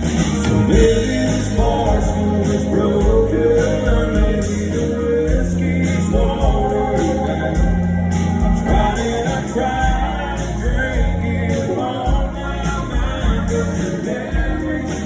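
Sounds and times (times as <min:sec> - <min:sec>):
drum beat: 0:00.0 - 0:04.7
country band playing: 0:00.0 - 0:15.0.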